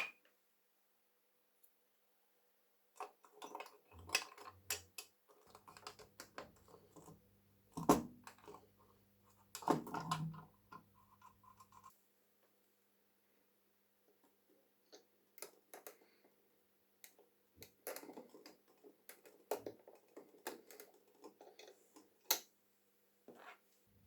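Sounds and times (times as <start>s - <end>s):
metal parts clicking and knocking: 3.0s - 6.4s.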